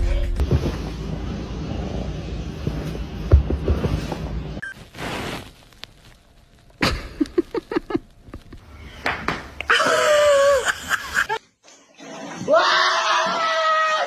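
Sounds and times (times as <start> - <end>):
loud falling cry: 12.3 - 14.0.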